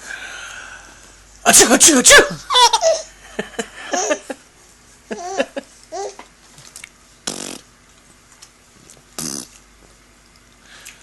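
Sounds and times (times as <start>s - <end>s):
baby laughing squeals: 2.5s - 3.1s.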